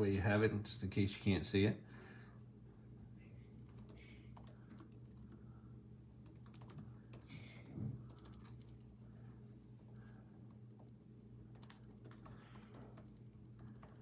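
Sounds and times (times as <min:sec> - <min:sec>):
steady low hum: 0:00.0 - 0:14.0
keyboard typing clicks: 0:06.2 - 0:07.2, 0:11.5 - 0:14.0.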